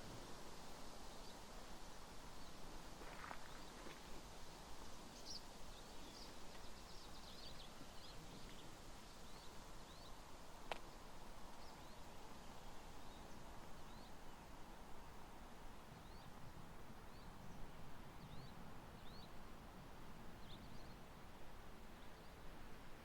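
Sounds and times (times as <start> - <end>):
outdoor background hiss: 0.0 - 23.0
small birds chirping: 0.6 - 14.7, 16.0 - 19.4.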